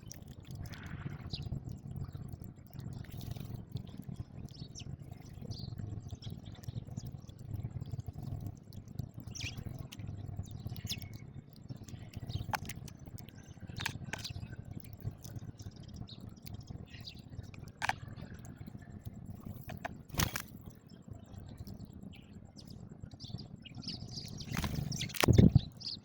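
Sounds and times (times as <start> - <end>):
sparrows chirping: 0.0 - 26.0
steady low rumble: 0.0 - 26.0
sharp click: 24.5 - 25.6.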